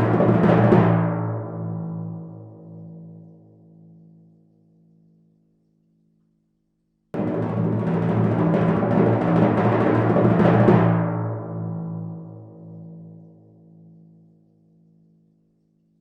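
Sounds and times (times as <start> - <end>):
timpani roll: 0.0 - 1.7, 7.2 - 12.4.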